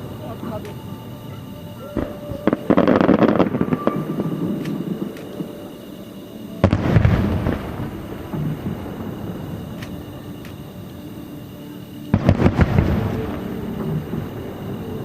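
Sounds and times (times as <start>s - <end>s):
fireworks booming: 1.9s - 5.9s, 6.6s - 10.6s, 12.1s - 15.0s.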